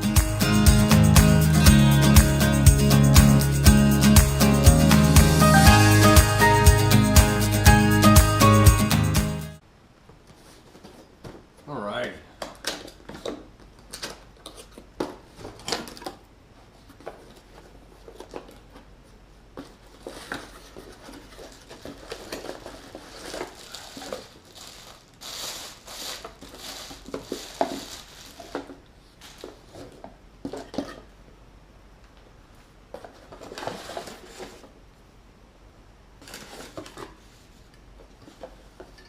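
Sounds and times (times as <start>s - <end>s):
packaging rustling and crinkling: 19.6s - 30.7s, 33.0s - 34.7s, 36.2s - 37.4s.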